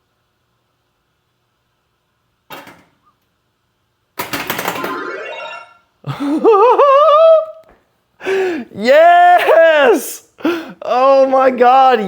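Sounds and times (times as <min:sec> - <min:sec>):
electronic warbling tone: 0:04.7 - 0:05.9.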